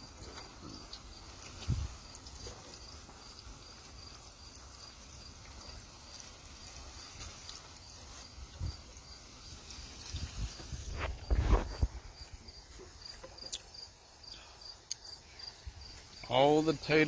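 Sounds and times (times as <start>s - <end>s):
cricket chirping: 0.0s - 17.0s
faint steady hiss: 0.0s - 17.0s.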